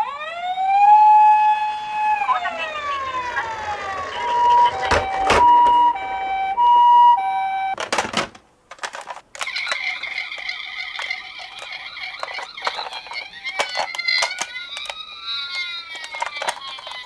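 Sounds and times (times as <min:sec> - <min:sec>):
toy electronic hi-lo siren: 0:00.0 - 0:07.8, 0:09.5 - 0:17.0
toy car rattling roll: 0:02.5 - 0:05.6, 0:07.8 - 0:17.0
toy clicks: 0:08.7 - 0:17.0.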